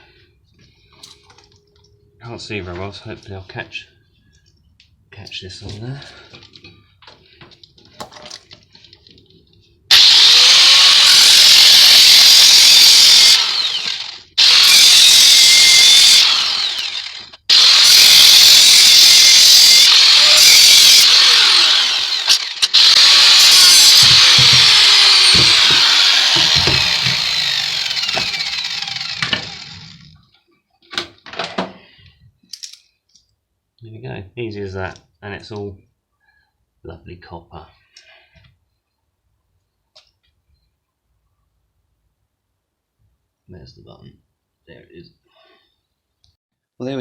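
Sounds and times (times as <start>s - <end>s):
power tool cutting steel: 9.9s - 30.2s.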